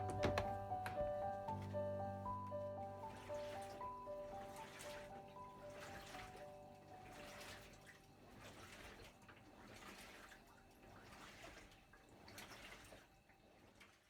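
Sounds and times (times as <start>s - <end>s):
water splashing and dripping: 2.8s - 14.0s.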